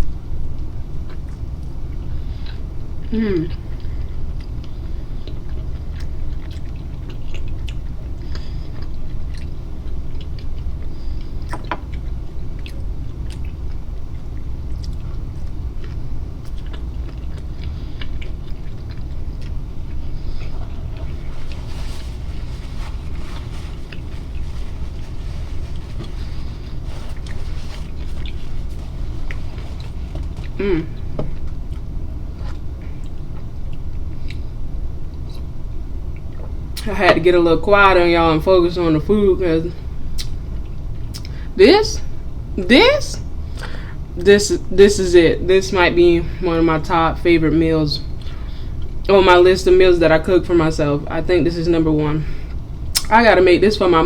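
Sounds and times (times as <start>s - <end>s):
steady low hum: 0.0s - 54.0s
chewing and biting food: 3.7s - 34.5s.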